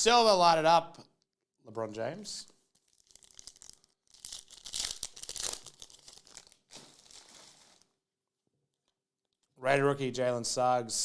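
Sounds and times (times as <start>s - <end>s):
wrapper tearing and crinkling: 2.5s - 8.0s.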